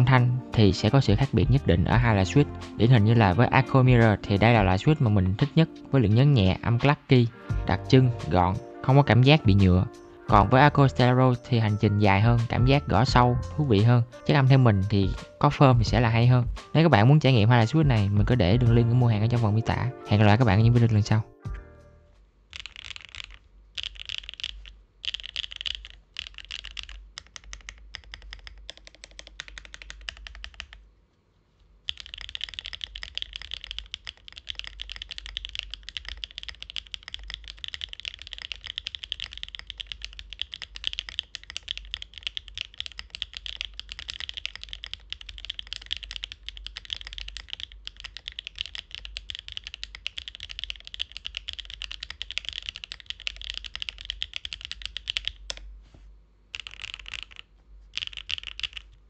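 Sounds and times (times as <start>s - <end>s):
mechanical keyboard typing: 22.5s - 30.8s, 31.8s - 55.6s, 56.5s - 59.0s.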